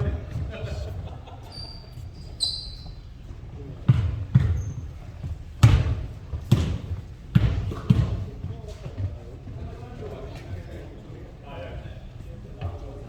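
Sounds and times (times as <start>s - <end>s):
short high squeaks: 1.5s - 3.0s
basketball bouncing on gym floor: 2.6s - 9.2s.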